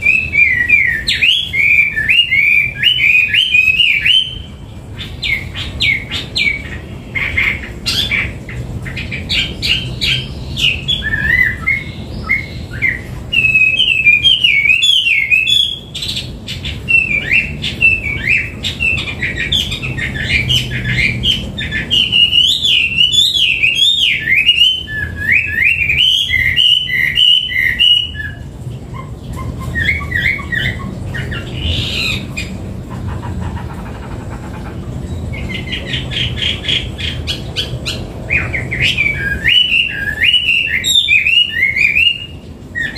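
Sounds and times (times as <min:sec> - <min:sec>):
bird singing whistled phrases: 0:00.0 - 0:04.5, 0:09.7 - 0:16.2, 0:16.9 - 0:28.4, 0:37.3 - 0:42.9.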